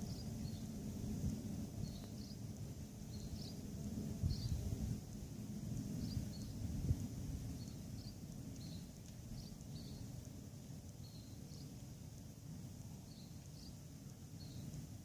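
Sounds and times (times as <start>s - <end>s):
small bird chirping: 0.0s - 0.7s, 1.8s - 2.5s, 3.1s - 4.6s, 6.0s - 6.6s, 7.5s - 10.2s, 10.9s - 11.8s, 13.0s - 14.8s
steady low rumble: 0.0s - 15.0s.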